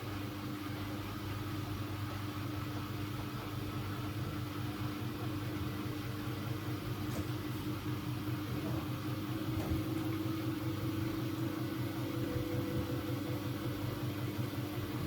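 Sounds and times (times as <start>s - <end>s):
washing machine motor hum: 0.0s - 15.0s.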